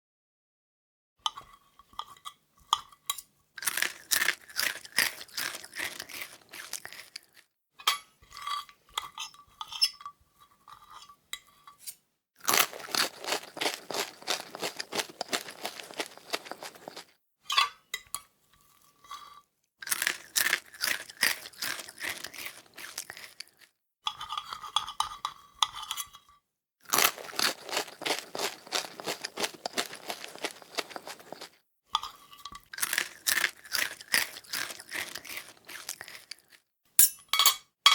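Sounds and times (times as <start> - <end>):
fork and spoon clattering: 37.0 - 37.9.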